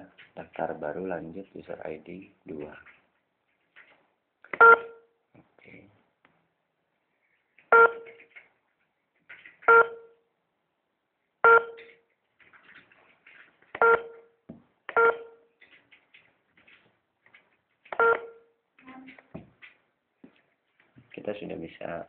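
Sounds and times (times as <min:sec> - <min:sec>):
short electronic beeps: 0:04.6 - 0:05.1, 0:07.7 - 0:08.2, 0:09.7 - 0:10.2, 0:11.4 - 0:12.0, 0:13.8 - 0:14.3, 0:15.0 - 0:15.5, 0:18.0 - 0:18.5.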